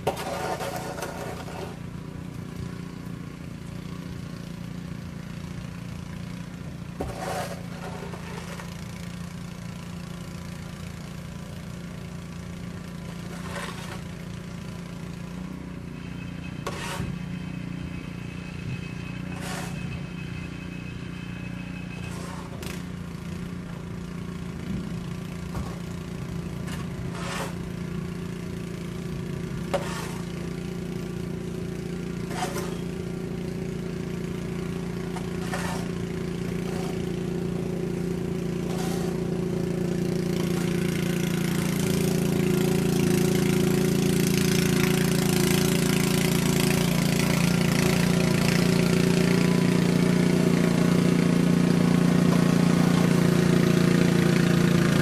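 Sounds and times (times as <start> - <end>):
engine running: 0.0 - 55.0.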